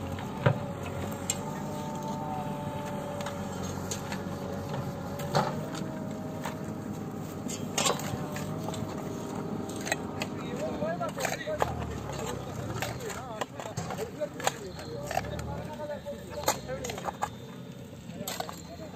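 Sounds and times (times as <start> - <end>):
motor running with whine: 0.0 - 13.1.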